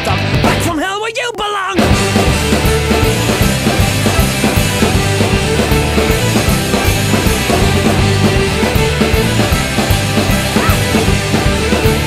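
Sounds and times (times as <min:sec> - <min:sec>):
instrumental rock music: 0:00.0 - 0:01.0, 0:01.6 - 0:12.0.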